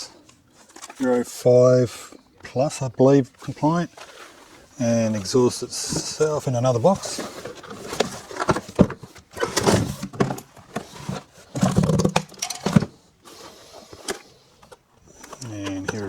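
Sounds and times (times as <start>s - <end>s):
cardboard box handled: 3.3s - 14.2s.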